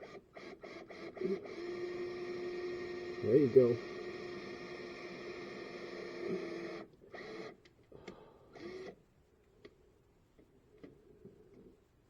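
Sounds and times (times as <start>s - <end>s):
electric drill whining: 0.7s - 3.2s, 3.8s - 7.6s, 8.6s - 9.0s.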